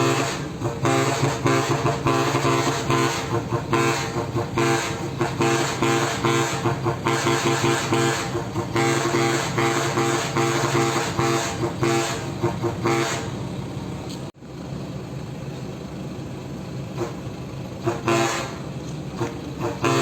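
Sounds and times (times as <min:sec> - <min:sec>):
musical vehicle horn tooting: 0:00.0 - 0:13.5, 0:17.8 - 0:20.0
vehicle noise: 0:00.0 - 0:20.0.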